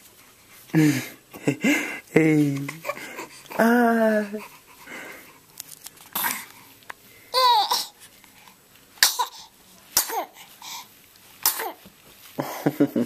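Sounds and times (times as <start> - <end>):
baby sneezing: 6.1 - 6.4, 7.4 - 8.0, 9.0 - 10.4, 11.4 - 11.8.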